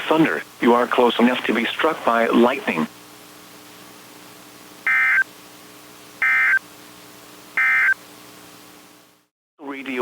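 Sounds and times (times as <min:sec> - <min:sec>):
faint steady hum: 0:00.0 - 0:10.0
buzzy digital tone bursts: 0:04.9 - 0:05.2.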